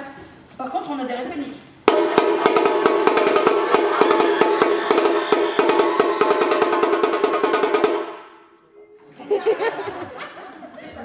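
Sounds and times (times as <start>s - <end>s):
drum in fast rhythm: 1.9s - 8.4s.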